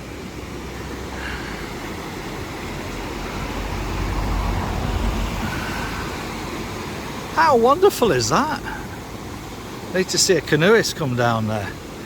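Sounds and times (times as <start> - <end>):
outdoor rushing noise: 0.0 - 9.0.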